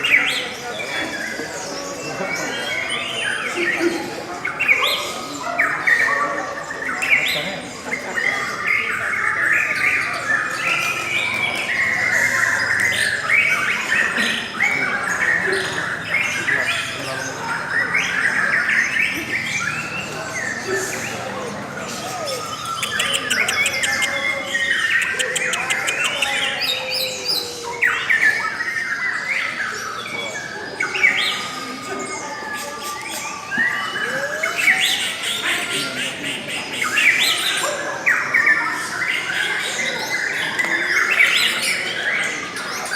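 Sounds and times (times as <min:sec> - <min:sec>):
lovebirds chattering: 0:00.0 - 0:42.9
lovebird chirping and whistling: 0:22.2 - 0:26.8.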